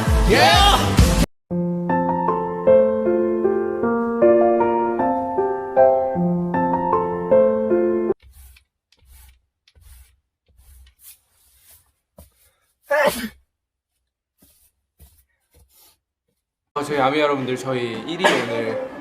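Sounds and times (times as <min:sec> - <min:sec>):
piano music: 0:01.5 - 0:08.2
man sneezing: 0:12.9 - 0:13.4.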